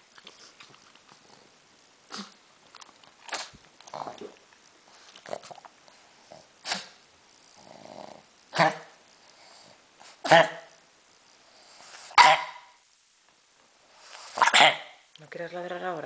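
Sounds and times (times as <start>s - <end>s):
dog coughing: 12.2s - 12.7s.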